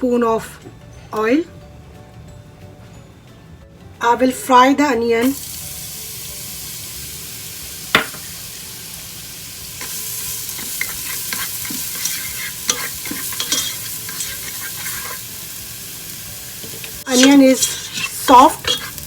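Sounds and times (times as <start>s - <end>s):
onion sizzling in hot oil: 5.2s - 19.0s
utensil knocking on pan: 7.9s - 8.3s
utensil scraping pan: 9.8s - 15.4s, 16.6s - 19.0s.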